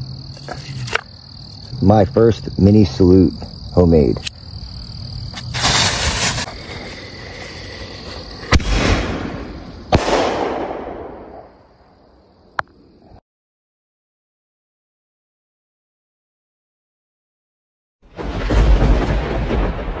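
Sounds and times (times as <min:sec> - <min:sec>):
firework fuse hiss: 0:05.3 - 0:10.4
firework bangs echoing: 0:05.5 - 0:06.5, 0:08.3 - 0:11.6.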